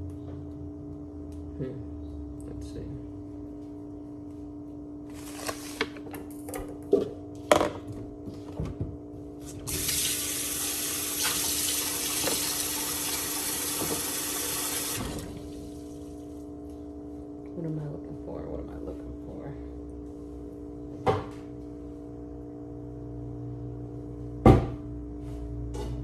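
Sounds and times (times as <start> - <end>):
kitchen faucet running: 9.5 - 16.1.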